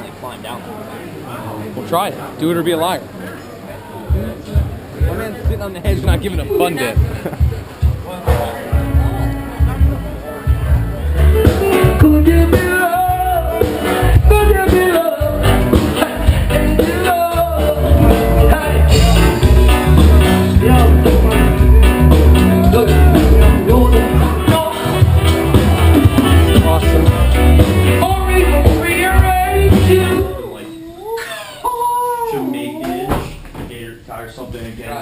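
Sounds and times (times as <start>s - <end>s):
song with singing over bass beat: 11.3s - 30.5s.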